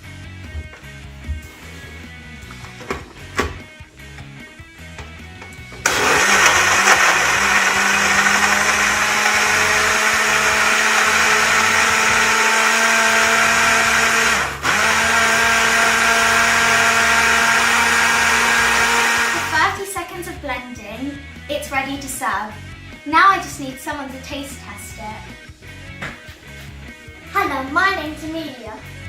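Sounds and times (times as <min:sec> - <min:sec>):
blender motor running: 0:05.8 - 0:19.8.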